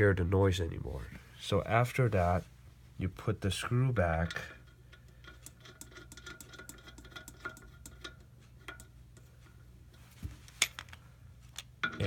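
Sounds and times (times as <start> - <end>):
low steady hum: 0.0 - 12.0
metallic ticks of screwdriver and screw: 4.3 - 9.3.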